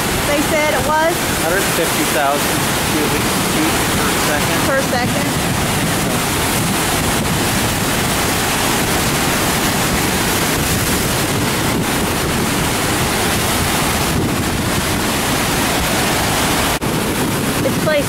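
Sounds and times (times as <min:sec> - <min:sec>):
water rushing over spillway: 0:00.0 - 0:18.0
wind buffeting microphone: 0:00.0 - 0:18.0.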